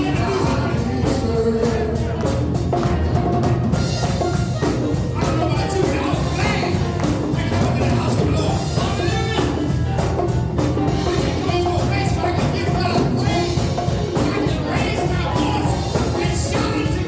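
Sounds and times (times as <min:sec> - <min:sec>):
singing: 0:00.0 - 0:02.7, 0:10.9 - 0:17.0
live worship band playing: 0:00.0 - 0:17.0
steady drum beat: 0:00.0 - 0:17.0.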